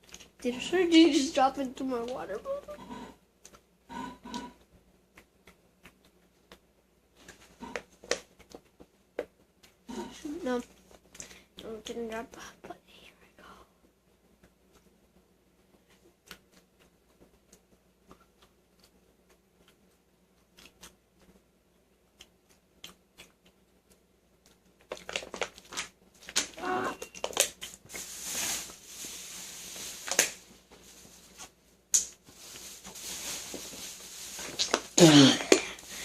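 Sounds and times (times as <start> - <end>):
person eating close to microphone: 15.8 - 21.4, 22.0 - 25.9
crackling and crinkling handling noise: 23.4 - 36.0.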